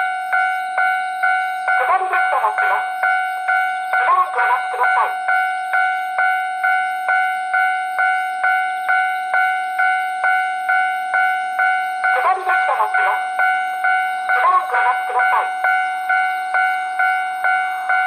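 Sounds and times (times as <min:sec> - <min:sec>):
level crossing warning bell: 0:00.0 - 0:18.0
recorded voice announcement: 0:01.8 - 0:03.0, 0:04.0 - 0:05.2, 0:12.1 - 0:13.4, 0:14.3 - 0:15.7.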